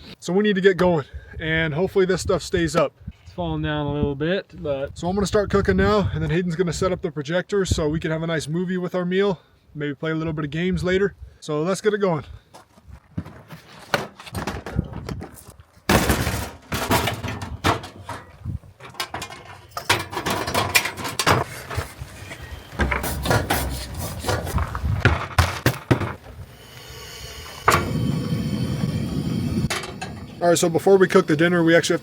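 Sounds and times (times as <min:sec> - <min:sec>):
cooking gear knocks and clunks: 0:14.0 - 0:26.4
steady hum: 0:19.7 - 0:32.0.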